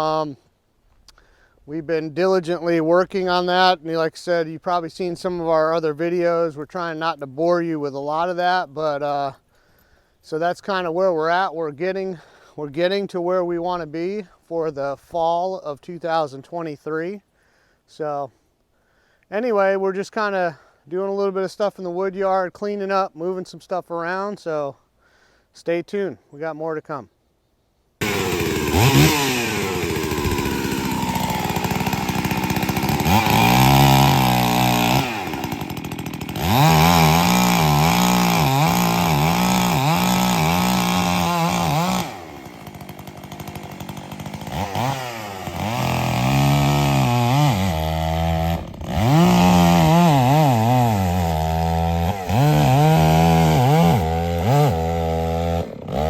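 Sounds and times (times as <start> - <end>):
chainsaw cutting wood: 28.0 - 56.0.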